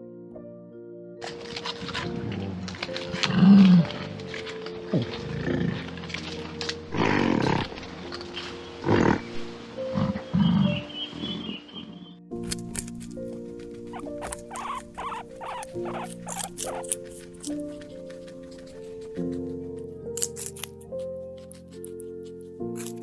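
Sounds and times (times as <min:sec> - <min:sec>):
background music held notes: 0:00.0 - 0:23.0
big cat growling: 0:01.2 - 0:12.2.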